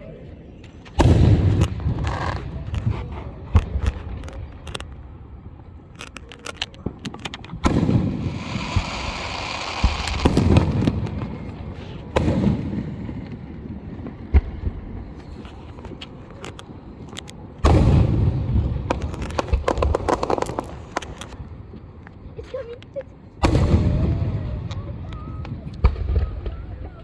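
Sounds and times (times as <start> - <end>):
sharp firework cracks: 0.9 - 5.1, 5.9 - 21.6, 23.4 - 27.0
deep firework booms: 1.0 - 4.2, 7.6 - 15.2, 17.6 - 20.9, 23.4 - 27.0
rapid firework crackling: 1.0 - 21.6, 23.4 - 27.0
firework hissing: 7.1 - 14.2.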